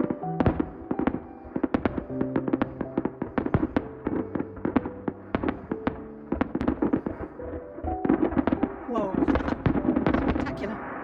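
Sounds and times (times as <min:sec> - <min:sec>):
fireworks bangs and crackles: 0:00.0 - 0:11.0.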